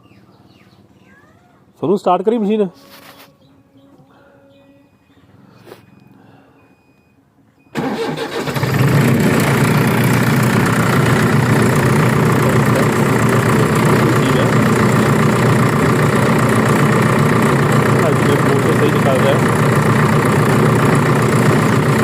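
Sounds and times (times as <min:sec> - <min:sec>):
engine cranking and idling: 0:07.6 - 0:22.0.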